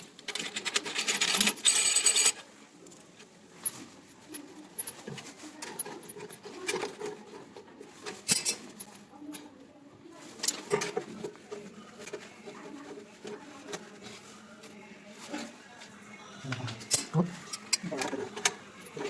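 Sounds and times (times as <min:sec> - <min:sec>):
metal parts clinking and rattling: 0:00.0 - 0:03.0, 0:03.6 - 0:09.0.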